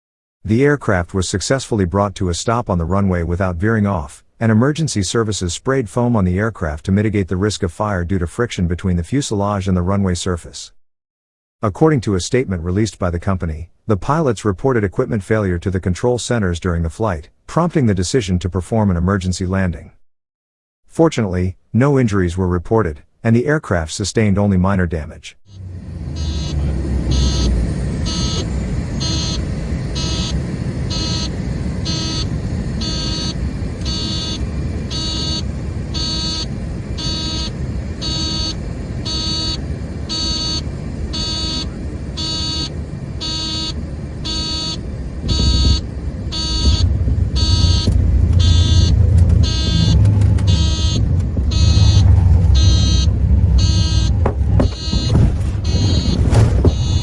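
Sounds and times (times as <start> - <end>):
low rumble: 25.5 - 43.2, 43.8 - 57.0
electronic alarm beeping: 25.5 - 57.0.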